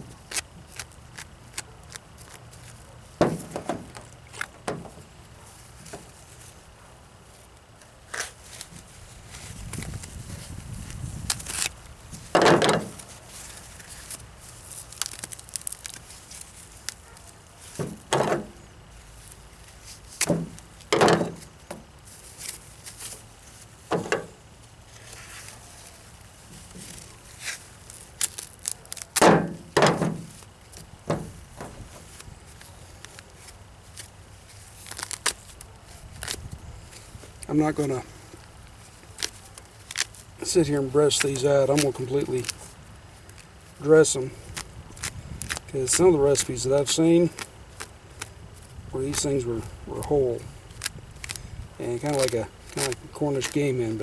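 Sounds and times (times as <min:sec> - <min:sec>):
feathers rustling and ripping: 0:08.1 - 0:18.1, 0:18.9 - 0:24.0, 0:24.9 - 0:54.0.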